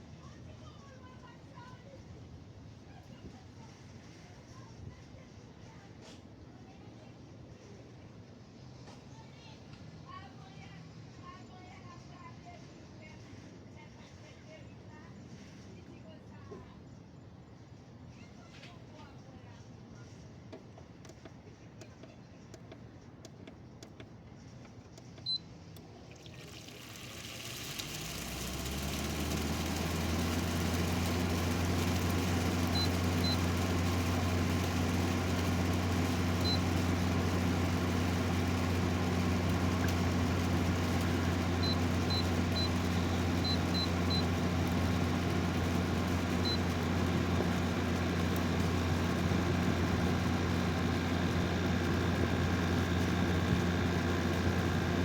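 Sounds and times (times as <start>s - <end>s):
air conditioner humming: 18.8s - 55.0s.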